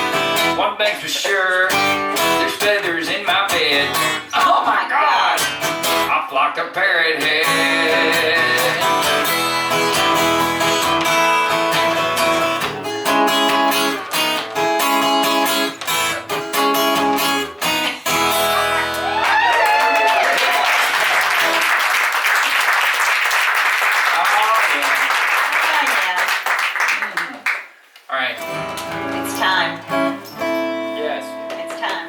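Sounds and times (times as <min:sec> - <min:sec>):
acoustic guitar strumming: 0:00.0 - 0:06.4, 0:07.0 - 0:19.3, 0:28.4 - 0:32.0
audience applauding: 0:18.5 - 0:27.8.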